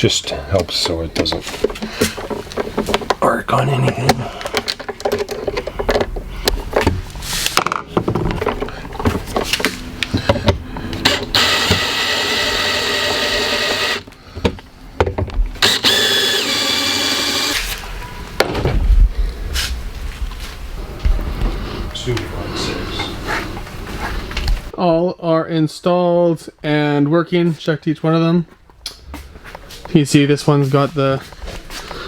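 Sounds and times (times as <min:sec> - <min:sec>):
handling clicks and knocks: 0:00.5 - 0:03.2, 0:03.8 - 0:11.0
power drill whining: 0:10.9 - 0:14.1, 0:15.6 - 0:17.8.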